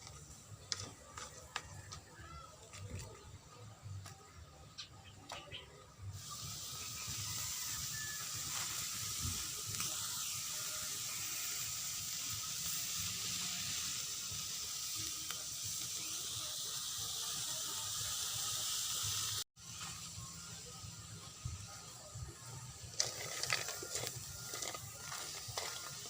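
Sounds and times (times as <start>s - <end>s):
food sizzling in a pan: 6.2s - 26.0s.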